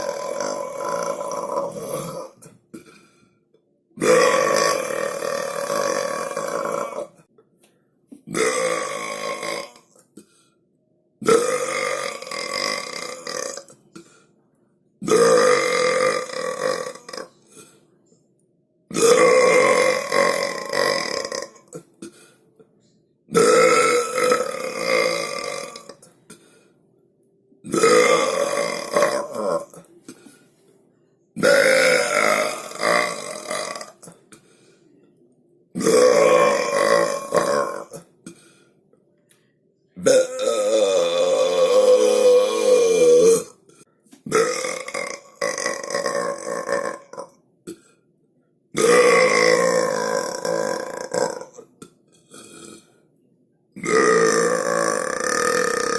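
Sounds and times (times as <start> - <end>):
person burping loudly: 0.0 - 3.2, 4.0 - 7.3, 8.2 - 10.1, 11.2 - 14.1, 15.0 - 17.8, 18.9 - 22.3, 23.3 - 26.6, 27.6 - 30.4, 31.4 - 34.4, 35.7 - 38.6, 40.0 - 48.0, 48.7 - 53.0, 53.8 - 55.9.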